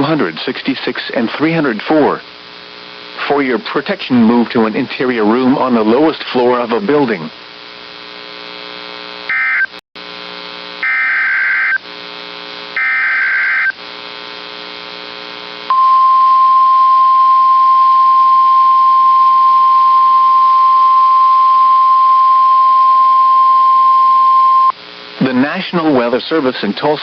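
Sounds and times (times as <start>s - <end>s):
electrical hum: 0.0s - 27.0s
steady warning alarm tone: 9.3s - 9.7s, 10.8s - 11.8s, 12.8s - 13.8s
screeching digital data bursts: 10.8s - 11.8s, 12.8s - 13.8s.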